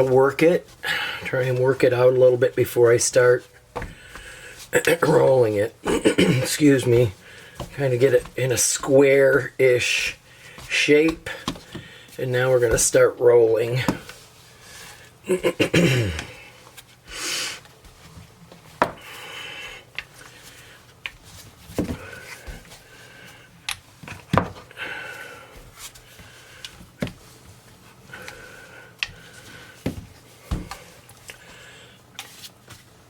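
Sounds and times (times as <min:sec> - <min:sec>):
rolling pin rolling dough: 0:06.4 - 0:15.1.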